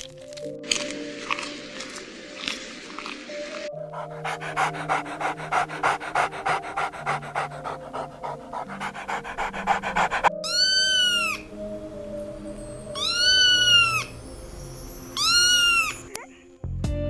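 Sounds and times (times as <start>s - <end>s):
background music: 0.0s - 17.0s
dog panting: 3.3s - 10.4s
cat meowing: 13.0s - 14.0s.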